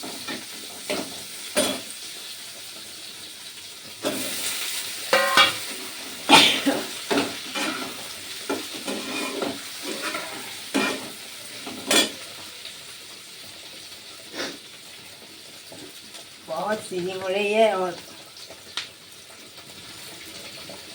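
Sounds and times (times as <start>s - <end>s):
eggs sizzling in hot oil: 0.0s - 20.9s
spatula scraping a pan: 6.8s - 12.4s.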